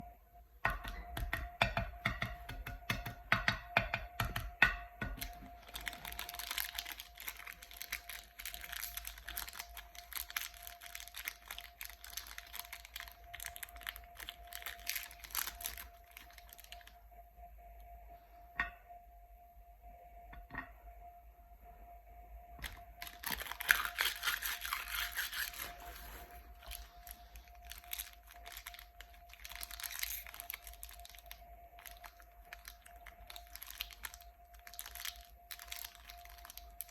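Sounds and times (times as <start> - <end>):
plastic wrappers crinkling: 5.0 - 17.0, 22.6 - 36.9.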